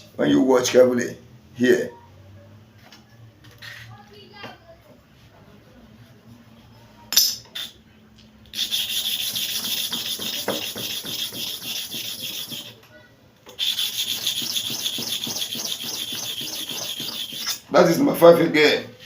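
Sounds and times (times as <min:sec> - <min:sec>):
blade scraping on sharpening surface: 0:08.5 - 0:12.8, 0:13.5 - 0:17.7.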